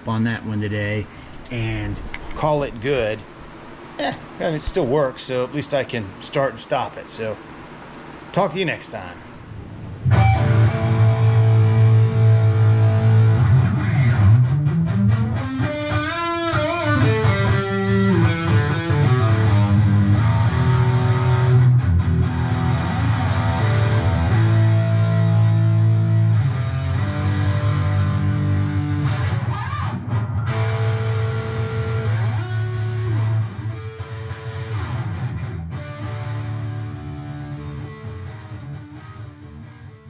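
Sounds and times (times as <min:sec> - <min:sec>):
electric guitar rock music: 0:10.0 - 0:40.0.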